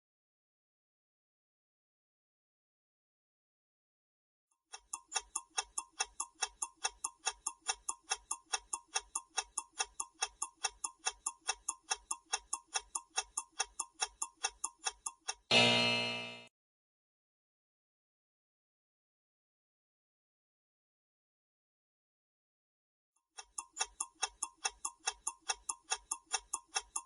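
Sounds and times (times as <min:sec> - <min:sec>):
countdown timer ticking: 0:04.9 - 0:16.5, 0:23.5 - 0:27.0
time's-up chime: 0:15.5 - 0:16.5.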